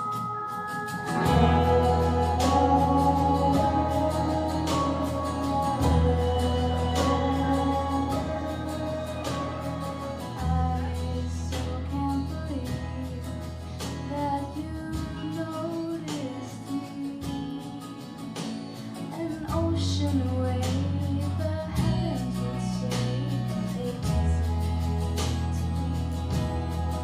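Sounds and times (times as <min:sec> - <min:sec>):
melody line: 0:00.0 - 0:11.0
guitar strumming: 0:00.0 - 0:14.2
held bass notes: 0:01.1 - 0:15.4, 0:19.6 - 0:27.0.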